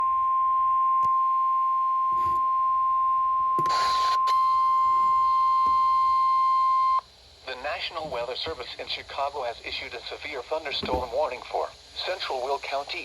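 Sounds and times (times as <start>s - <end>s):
steady warning alarm tone: 0.0s - 7.0s.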